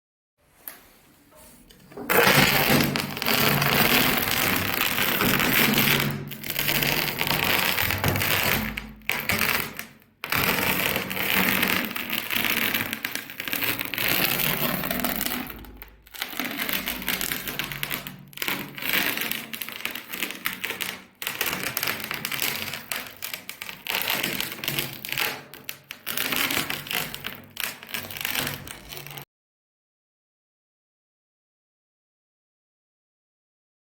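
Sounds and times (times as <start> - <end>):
material being crushed: 1.6 - 19.0, 22.4 - 29.2.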